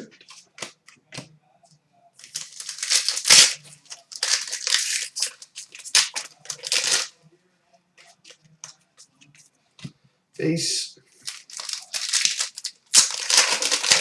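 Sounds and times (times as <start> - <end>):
foil wrapper crinkling and tearing: 2.2 - 7.1, 11.2 - 14.0.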